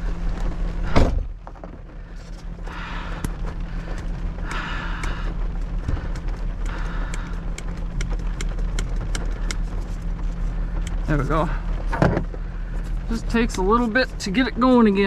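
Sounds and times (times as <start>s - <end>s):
vehicle humming: 0.0s - 15.0s
vehicle door slamming: 0.8s - 1.9s.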